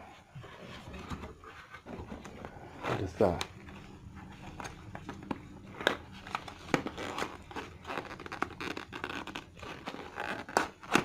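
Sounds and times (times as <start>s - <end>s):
packaging crinkling: 4.4s - 11.0s.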